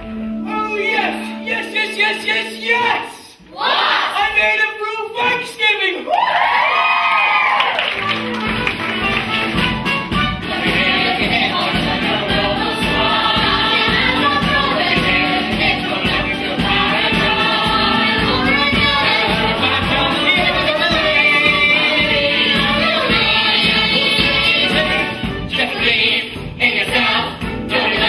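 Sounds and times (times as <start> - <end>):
choir singing: 1.0 - 4.4, 10.1 - 28.0
instrumental accompaniment: 7.9 - 28.0.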